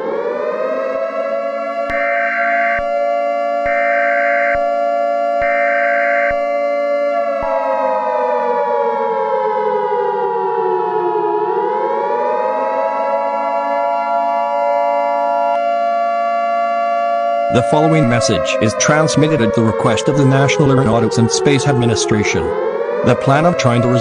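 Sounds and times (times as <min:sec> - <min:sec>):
wailing siren: 0:00.0 - 0:24.0
steady high tone: 0:01.4 - 0:07.8, 0:12.5 - 0:15.9, 0:17.5 - 0:24.0.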